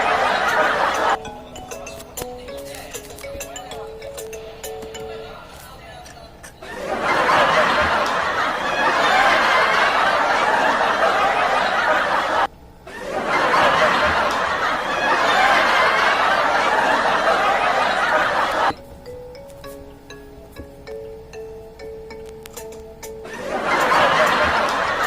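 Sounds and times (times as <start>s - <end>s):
crowd laughter: 0.0s - 2.0s, 6.4s - 18.8s, 23.2s - 25.0s.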